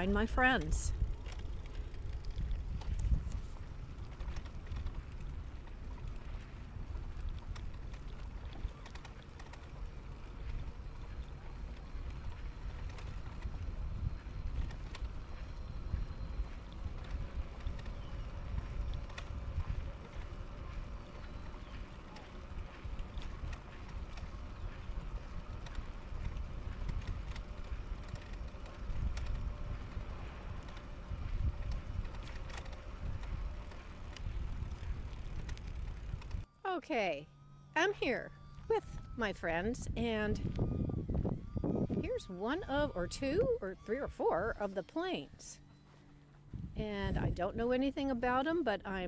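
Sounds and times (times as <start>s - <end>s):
bike tyres on paved road: 0.0s - 36.5s
small clicks and rattles: 0.0s - 36.5s
wind rumbling on microphone: 0.0s - 36.5s, 38.0s - 45.6s, 46.4s - 49.0s
faint ticks: 0.6s - 36.5s.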